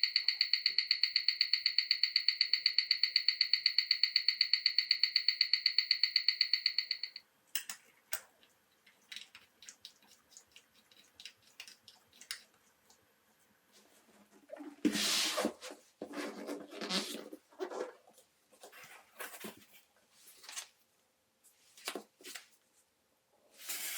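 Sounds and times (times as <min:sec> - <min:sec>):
watch ticking fast: 0:00.0 - 0:07.2.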